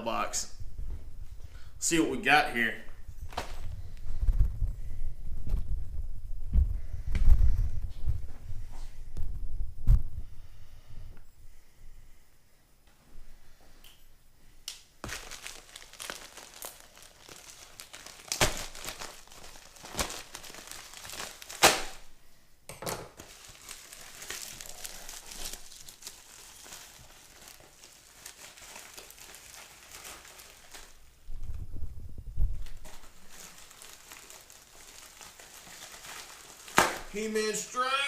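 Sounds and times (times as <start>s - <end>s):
packaging tearing: 15.0s - 22.0s, 23.2s - 31.0s, 32.6s - 37.1s
paper and plastic crinkling: 15.0s - 22.1s, 23.2s - 31.8s, 32.4s - 37.8s.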